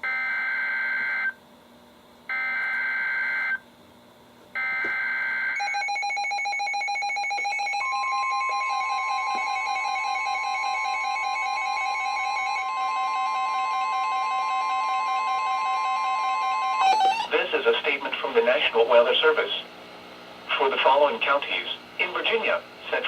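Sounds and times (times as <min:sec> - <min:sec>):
pulsing alarm beeps and warbles: 0:04.6 - 0:17.3
steady alert tone: 0:16.8 - 0:17.3
two-tone digital data screech: 0:16.8 - 0:17.3.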